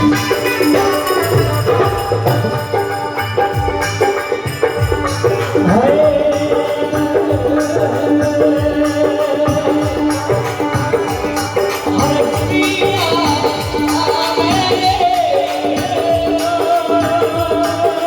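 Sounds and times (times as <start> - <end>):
folk devotional music: 0.0 - 18.0
jingling hand percussion: 0.0 - 18.0.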